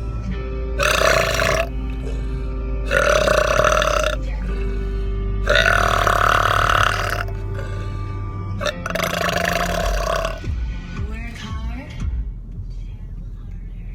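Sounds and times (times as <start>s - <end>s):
man belching: 0.8s - 2.3s, 2.9s - 7.9s, 8.6s - 10.4s.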